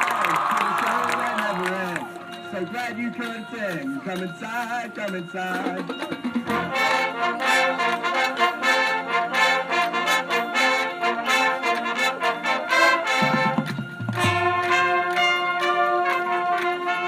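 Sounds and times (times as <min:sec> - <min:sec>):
marching band brass playing: 0:05.8 - 0:17.0
low brass held chords: 0:06.5 - 0:17.0.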